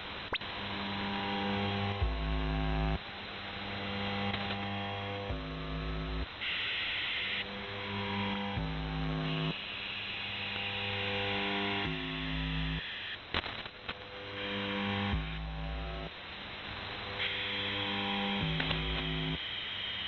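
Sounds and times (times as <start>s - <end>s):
static crackle: 0.0s - 20.0s
buzzing radio tones changing pitch: 0.3s - 3.0s, 3.9s - 9.6s, 17.1s - 19.5s.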